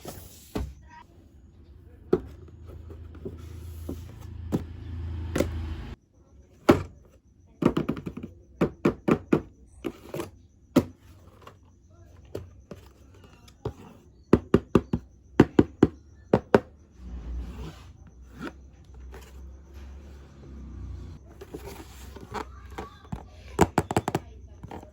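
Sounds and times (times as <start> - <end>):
sharp taps and clicks on packaging: 23.1 - 24.9.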